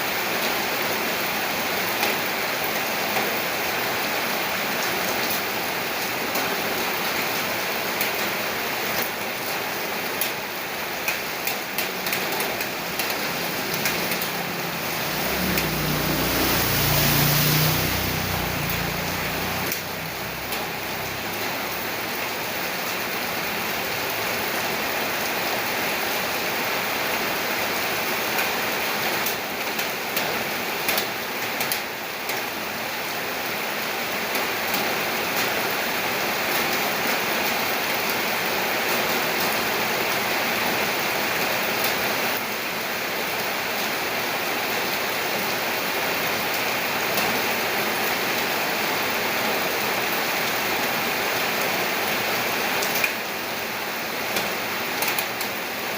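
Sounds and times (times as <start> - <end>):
heavy rain: 0.0 - 55.9
water drips and splashes: 11.0 - 25.3.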